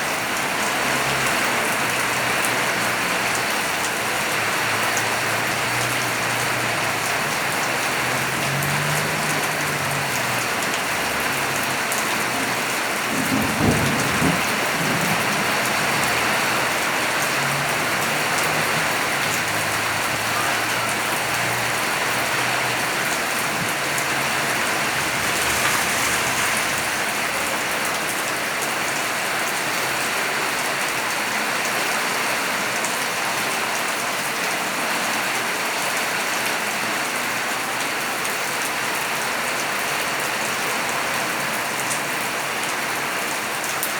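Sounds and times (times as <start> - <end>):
heavy rain pattering: 0.0 - 43.9.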